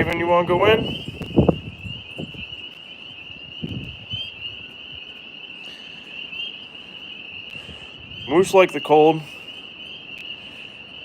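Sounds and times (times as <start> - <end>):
tree frogs trilling: 0.0 - 11.0.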